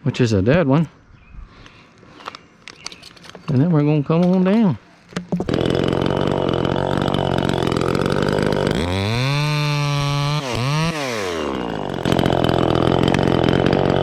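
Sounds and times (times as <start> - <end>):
chainsaw idling and revving: 5.4 - 14.0.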